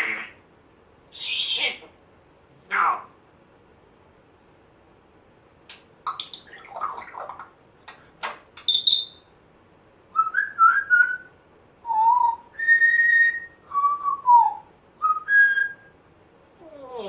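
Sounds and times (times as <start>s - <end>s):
parrot whistling: 8.2s - 9.3s, 10.2s - 11.3s, 11.9s - 16.0s.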